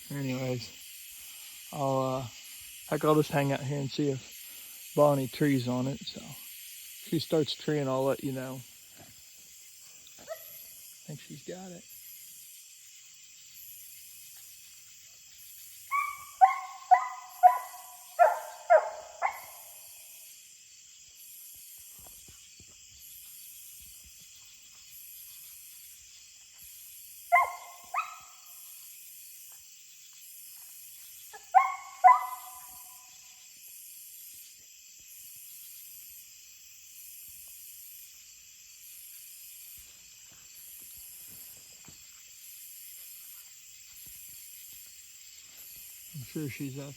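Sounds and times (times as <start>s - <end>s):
dog barking: 10.2s - 10.6s, 15.9s - 19.7s, 27.3s - 28.4s, 31.4s - 32.8s.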